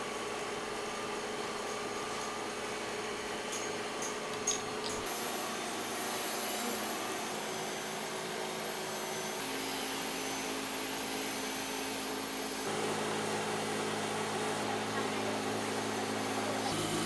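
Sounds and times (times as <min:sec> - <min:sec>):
machine whirring with hiss: 0:04.4 - 0:17.0.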